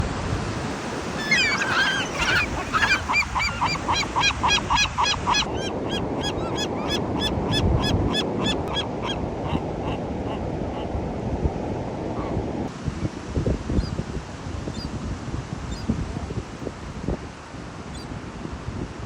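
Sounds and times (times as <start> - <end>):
seagulls calling: 0.6 - 10.4.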